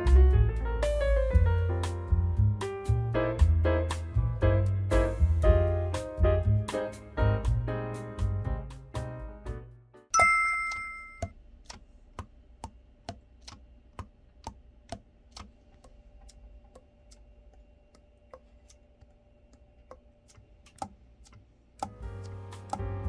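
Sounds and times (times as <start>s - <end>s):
bell-like ding: 10.2s - 11.3s.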